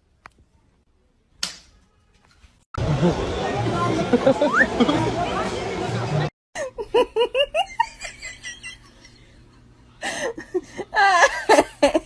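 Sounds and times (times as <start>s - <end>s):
person laughing: 6.6s - 9.4s, 10.0s - 12.0s.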